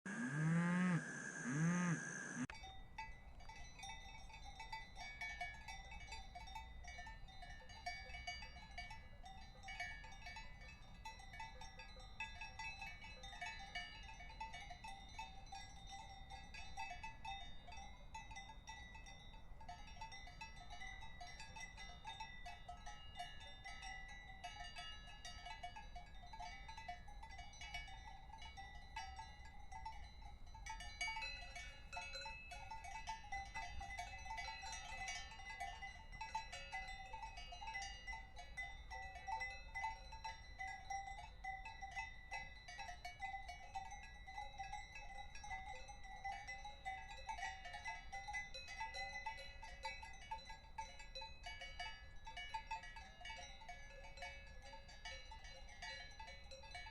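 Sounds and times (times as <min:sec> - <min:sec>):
cowbells clanking: 0:00.1 - 0:56.9.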